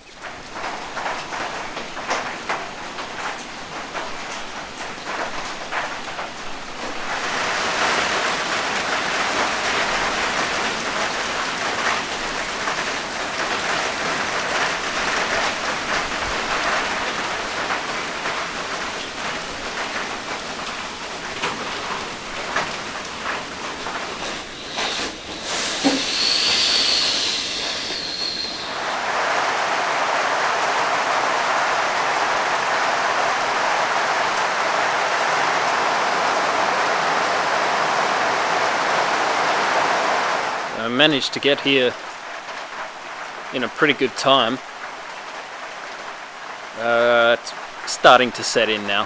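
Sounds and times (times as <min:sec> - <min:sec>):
ticks of raindrops: 0:00.0 - 0:27.9, 0:41.0 - 0:49.0
heavy rain pouring: 0:00.0 - 0:49.0
brief high squeal: 0:24.3 - 0:28.9.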